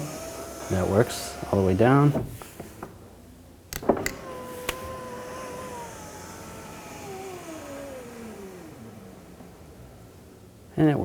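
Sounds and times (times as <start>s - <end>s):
window motor whine: 0.0s - 2.9s, 3.8s - 10.7s
power window switch clicking: 3.7s - 8.7s.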